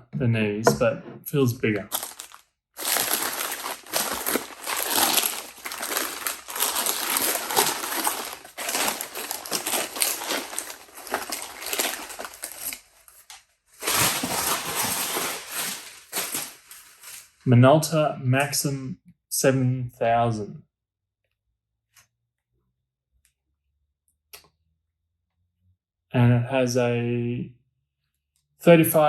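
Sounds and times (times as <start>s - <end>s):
paper wrapping crinkling: 1.8s - 17.4s.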